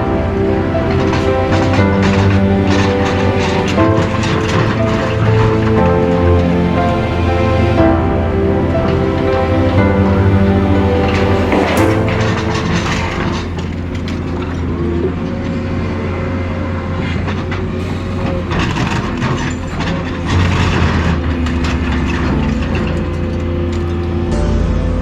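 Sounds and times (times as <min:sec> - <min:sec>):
heavy machine engine running: 0:00.0 - 0:16.3.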